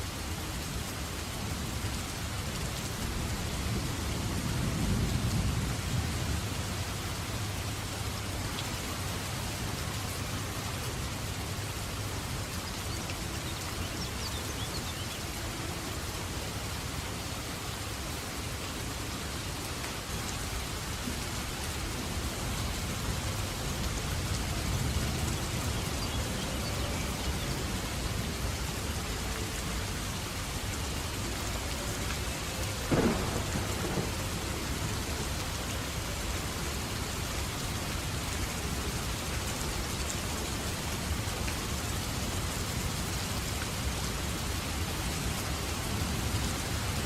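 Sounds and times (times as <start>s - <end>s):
steady rain: 0.0s - 47.0s
thunder rumbling: 32.5s - 35.4s
loud thunderclap: 32.9s - 34.5s.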